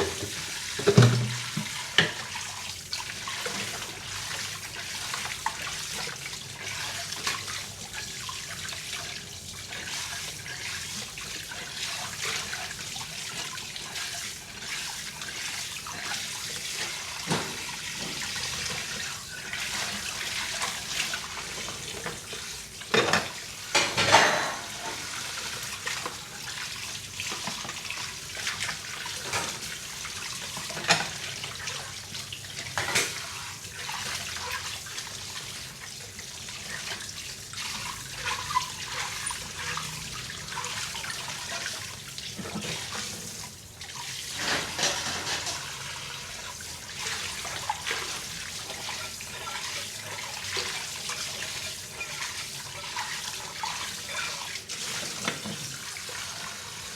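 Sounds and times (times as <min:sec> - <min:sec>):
dishes clinking: 0:00.0 - 0:02.2, 0:22.9 - 0:25.1, 0:44.4 - 0:45.7
water running and splashing: 0:00.0 - 0:56.9.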